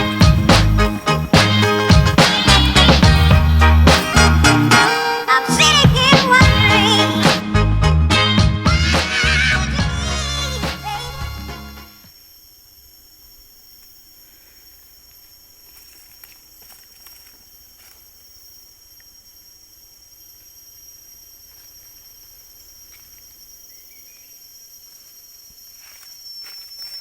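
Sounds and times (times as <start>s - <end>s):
rising bird chirp: 0.0s - 7.3s
high-pitched insect drone: 0.0s - 7.6s, 12.0s - 27.0s.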